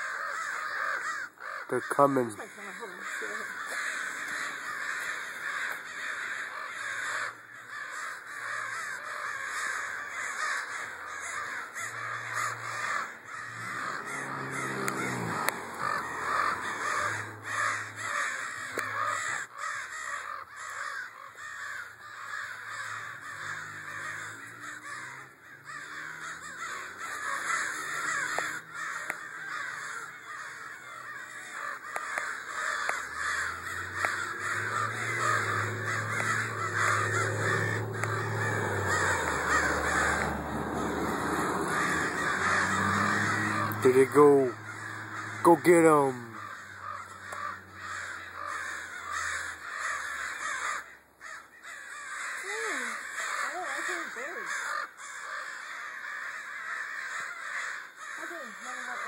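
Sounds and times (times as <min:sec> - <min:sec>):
flock of birds calling: 0:00.0 - 0:59.0.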